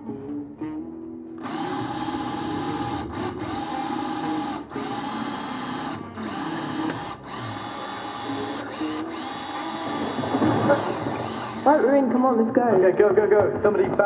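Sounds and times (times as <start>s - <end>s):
power drill whining: 1.4s - 12.1s.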